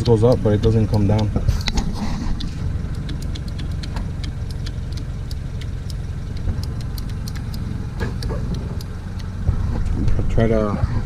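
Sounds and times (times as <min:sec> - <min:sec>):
car engine idling: 0:00.0 - 0:11.0
light ticks: 0:02.4 - 0:09.4.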